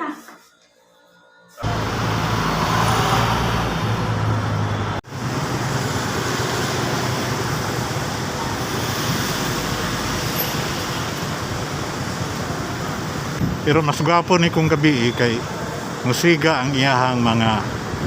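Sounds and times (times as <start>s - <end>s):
road traffic noise: 1.5s - 18.0s.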